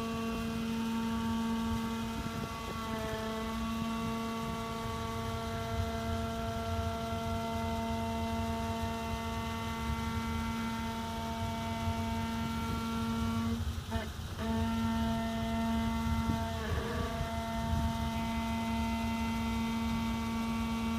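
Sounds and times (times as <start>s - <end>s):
brakes humming drone: 0.0s - 20.9s.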